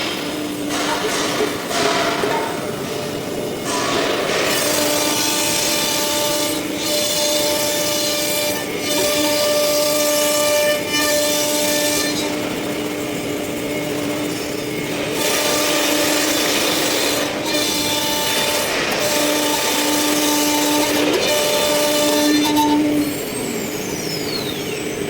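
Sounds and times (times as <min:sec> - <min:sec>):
router spindle whine: 0:04.6 - 0:25.0.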